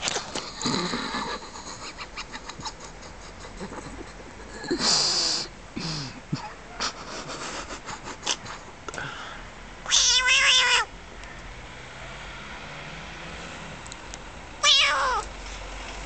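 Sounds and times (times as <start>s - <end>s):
cat yowling: 9.9s - 10.9s, 14.6s - 15.3s.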